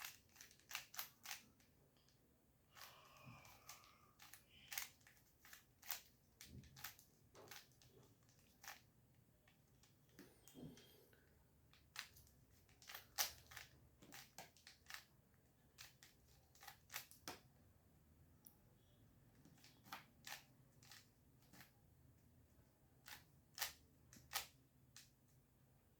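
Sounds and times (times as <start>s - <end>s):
puzzle cube layers clicking: 0.0s - 1.4s.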